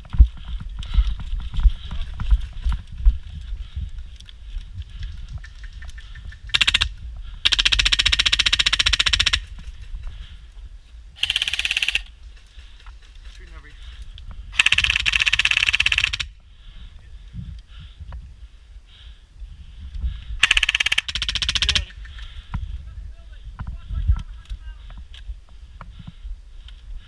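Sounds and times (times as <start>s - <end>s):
airsoft gun firing full auto: 11.2s - 12.1s, 14.6s - 16.3s, 20.4s - 21.8s.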